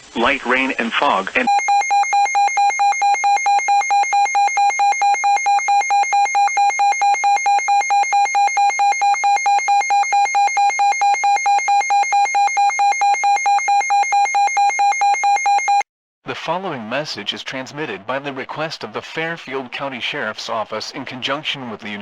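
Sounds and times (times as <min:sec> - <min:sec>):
pulsing electronic beep: 0:01.5 - 0:15.8.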